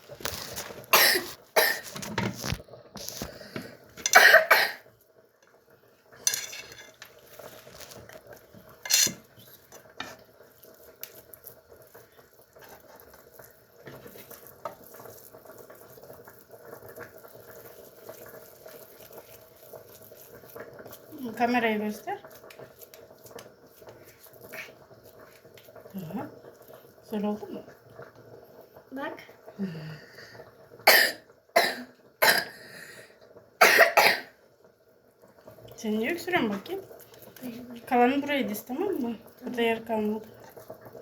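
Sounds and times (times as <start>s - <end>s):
person coughing: 0.9s - 1.9s, 4.1s - 4.8s, 30.9s - 32.6s, 33.6s - 34.3s
dishes and cutlery clattering: 6.2s - 7.2s, 8.8s - 9.3s.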